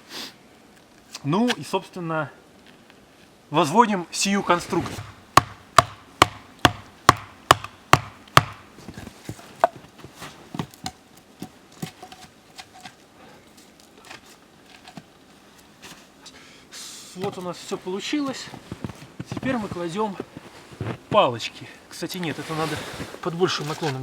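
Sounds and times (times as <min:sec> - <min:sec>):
sharp blows on wood: 0:04.9 - 0:08.8
sticks knocking and handled: 0:05.0 - 0:13.0.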